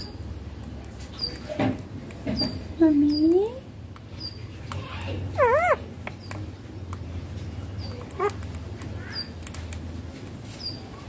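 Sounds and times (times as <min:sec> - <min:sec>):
faint parrot chirps: 0:04.2 - 0:06.3
parrot squawking: 0:04.8 - 0:05.9, 0:07.8 - 0:08.4.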